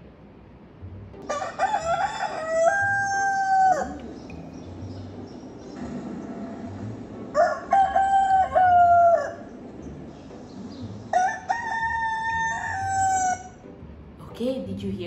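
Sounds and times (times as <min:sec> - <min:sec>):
rooster crowing: 0:01.2 - 0:04.0, 0:07.3 - 0:09.6, 0:11.1 - 0:13.6.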